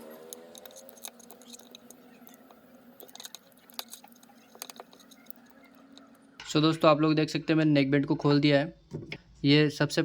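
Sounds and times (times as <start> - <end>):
plastic housing clicks and crackles: 0.2 - 6.2.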